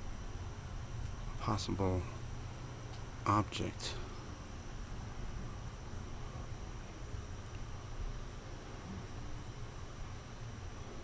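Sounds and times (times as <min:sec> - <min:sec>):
crickets chirping: 0:00.0 - 0:11.0.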